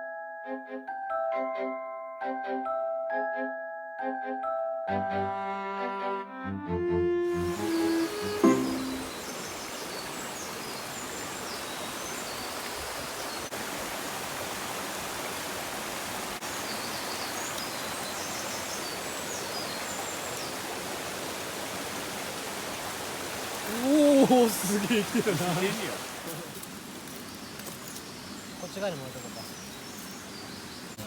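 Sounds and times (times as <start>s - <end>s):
river rushing: 7.3s - 27.8s.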